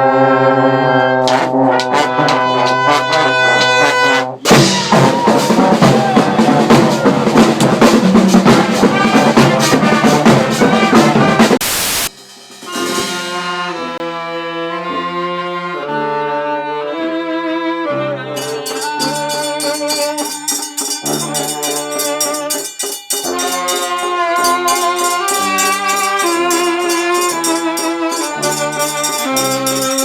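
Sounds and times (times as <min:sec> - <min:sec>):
brass horns playing melody: 0:00.0 - 0:17.2, 0:17.8 - 0:30.0
fast steady percussion beat: 0:01.2 - 0:03.8, 0:04.4 - 0:13.6, 0:18.4 - 0:30.0.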